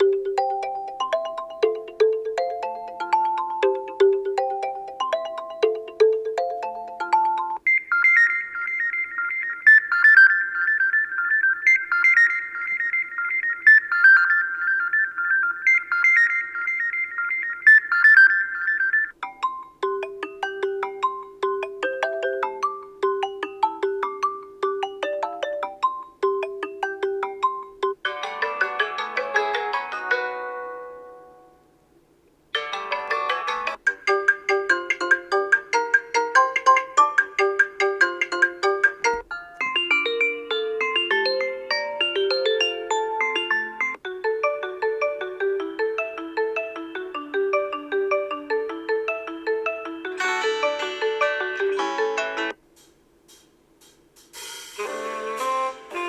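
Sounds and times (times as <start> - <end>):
ringtone melody of short notes: 0.0 - 8.4, 19.2 - 31.6, 32.6 - 52.6, 54.8 - 56.0
high-pitched ringtone melody: 0.0 - 31.5, 32.6 - 52.6, 54.8 - 56.0
ringtone of quick chime notes: 32.6 - 47.0.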